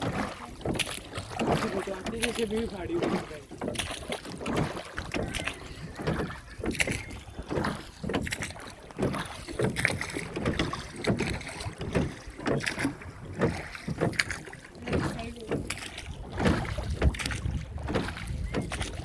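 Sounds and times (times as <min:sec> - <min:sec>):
boat splashes and knocks: 0:00.0 - 0:19.0
wind on microphone: 0:14.8 - 0:19.0.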